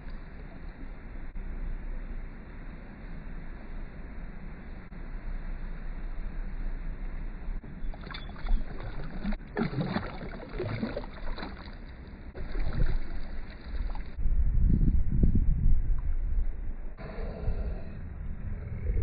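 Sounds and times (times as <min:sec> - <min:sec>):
wind rumbling on microphone: 0:00.0 - 0:19.0.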